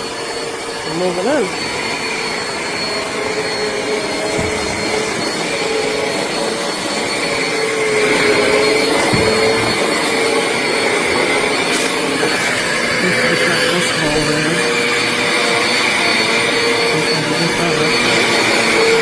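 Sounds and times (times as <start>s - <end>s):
vacuum cleaner motor whining: 0.0s - 19.0s.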